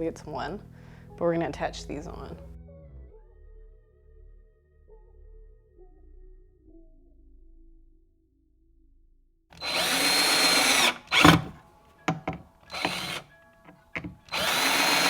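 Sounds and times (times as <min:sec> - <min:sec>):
power drill driving screws: 0:09.6 - 0:15.0.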